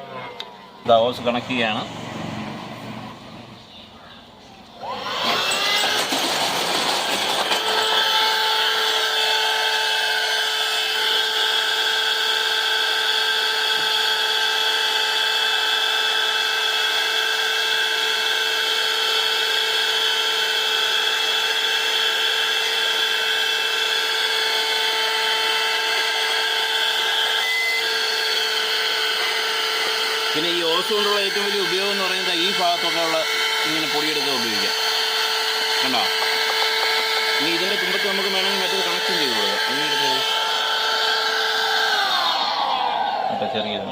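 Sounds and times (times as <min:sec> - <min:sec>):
handheld vacuum motor whine: 0:04.6 - 0:43.9.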